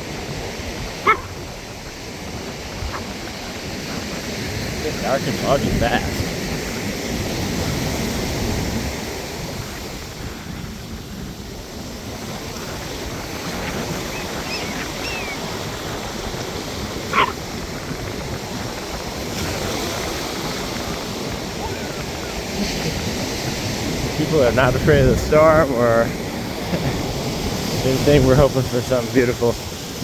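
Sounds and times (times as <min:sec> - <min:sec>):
ocean surf washing: 0:00.0 - 0:30.0
faint high chirps: 0:14.1 - 0:15.4.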